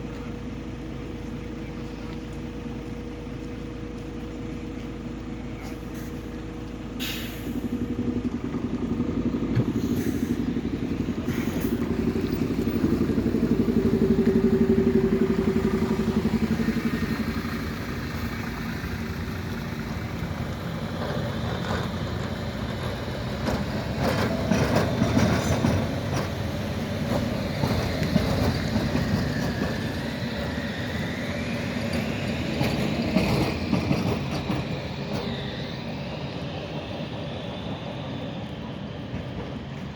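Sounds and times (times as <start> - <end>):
tram running hum: 0.0 - 39.9
wheels clicking over rail joints: 0.1 - 39.9
high wheel squeal: 23.6 - 39.0.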